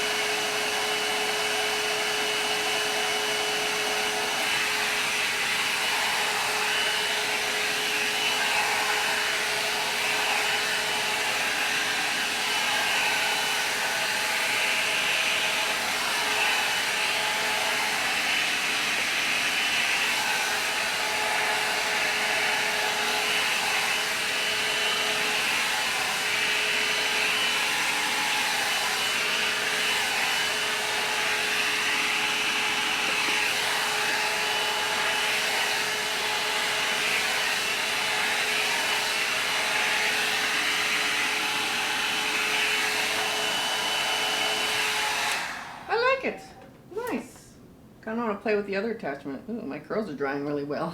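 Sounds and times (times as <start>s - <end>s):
hair dryer brush whining: 0.0s - 47.4s.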